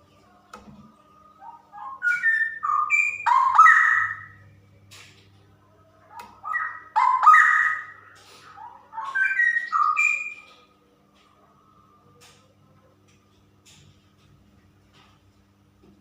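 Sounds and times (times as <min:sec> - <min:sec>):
bird singing whistled notes: 0:01.7 - 0:04.4, 0:09.0 - 0:10.6.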